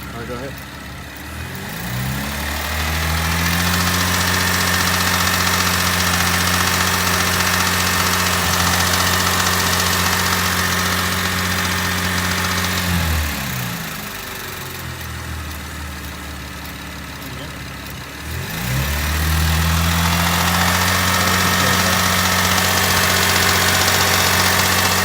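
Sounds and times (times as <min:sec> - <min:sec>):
car engine running: 0:00.0 - 0:25.0.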